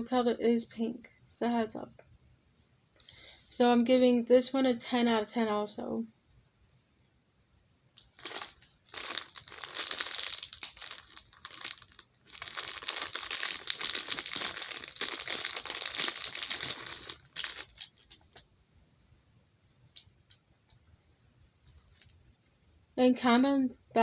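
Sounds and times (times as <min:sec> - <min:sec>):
plastic tube crinkling: 0:08.0 - 0:18.5, 0:21.6 - 0:22.2.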